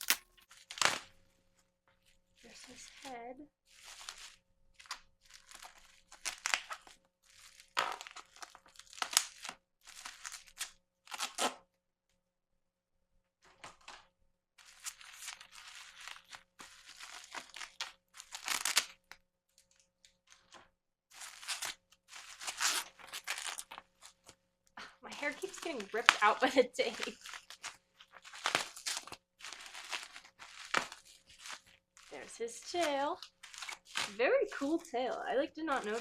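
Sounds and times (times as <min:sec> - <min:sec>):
packaging crinkling: 0:00.0 - 0:01.0, 0:03.8 - 0:11.4, 0:14.6 - 0:19.2, 0:20.3 - 0:24.4, 0:25.1 - 0:36.0
sticky tape ripping: 0:00.0 - 0:01.0, 0:05.6 - 0:06.9, 0:07.7 - 0:11.6, 0:14.8 - 0:19.0, 0:21.1 - 0:24.4, 0:25.2 - 0:34.6.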